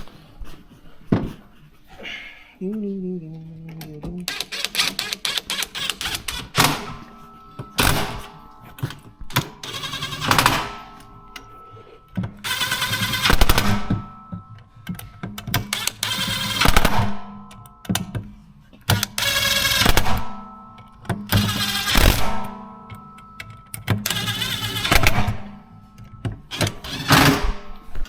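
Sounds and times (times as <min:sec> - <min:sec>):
power drill driving screws: 0:04.3 - 0:07.0, 0:15.6 - 0:17.0, 0:18.9 - 0:20.2, 0:21.3 - 0:22.4, 0:24.1 - 0:25.4, 0:26.5 - 0:27.6.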